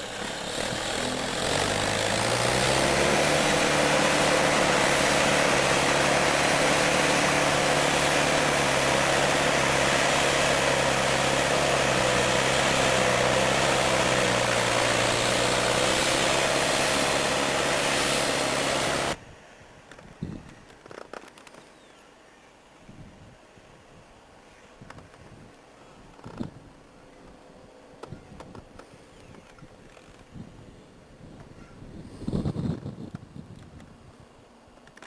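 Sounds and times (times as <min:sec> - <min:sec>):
digger engine running: 0:00.0 - 0:19.2
heavy rushing noise: 0:00.0 - 0:19.2.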